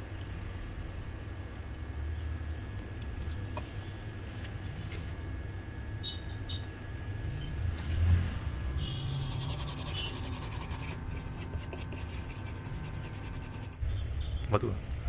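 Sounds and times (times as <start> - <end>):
steady low hum: 0.0 - 15.0
scratchy rubbing strokes: 9.1 - 13.8.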